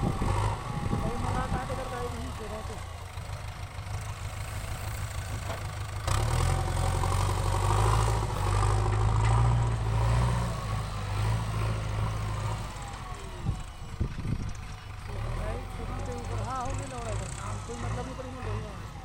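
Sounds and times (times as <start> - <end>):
diesel engine idling and revving: 0.0 - 19.0.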